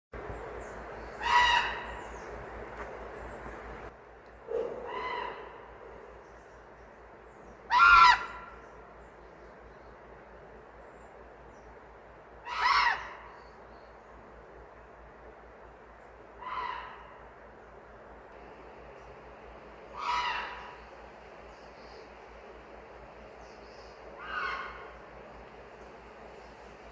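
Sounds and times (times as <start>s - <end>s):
steady background hiss: 0.2s - 4.5s.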